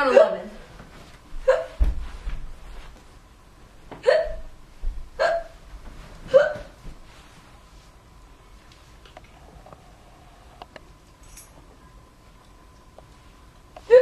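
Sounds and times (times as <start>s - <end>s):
person hiccuping: 4.0s - 4.5s, 5.2s - 5.6s.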